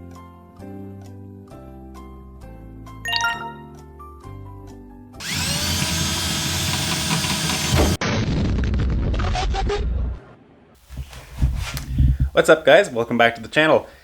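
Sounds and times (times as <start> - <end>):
music notes: 3.1 - 3.9
power drill running: 5.2 - 8.0.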